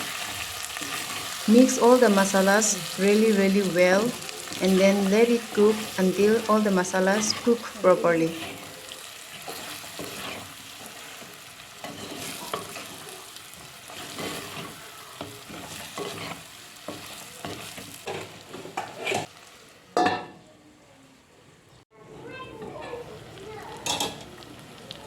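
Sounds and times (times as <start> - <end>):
spatula scraping pan: 0.0 - 2.1, 2.8 - 19.3
meat sizzling in oil: 0.0 - 19.9, 23.1 - 25.0
spatula clatter: 0.2 - 2.0, 4.2 - 19.3.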